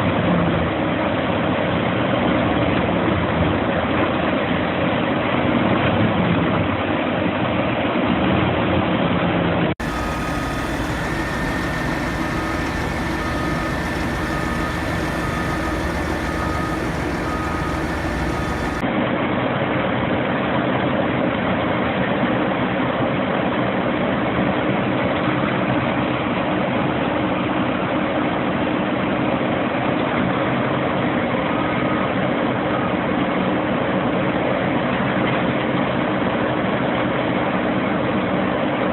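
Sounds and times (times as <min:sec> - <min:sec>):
diesel engine running: 0:09.8 - 0:18.8.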